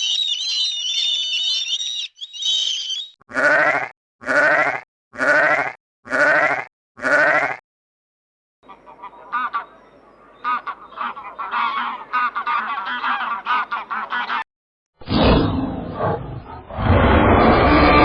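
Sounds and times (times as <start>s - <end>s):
flock of birds honking: 10.4s - 14.4s.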